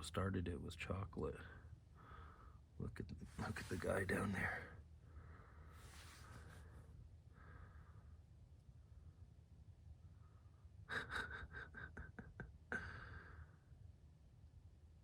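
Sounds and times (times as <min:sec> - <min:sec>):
faint breathing: 0:01.5 - 0:08.3, 0:12.7 - 0:13.7.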